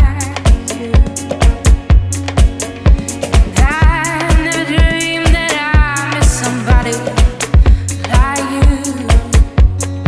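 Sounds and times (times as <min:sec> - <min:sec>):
funk soul song with kick drum: 0:00.0 - 0:10.0.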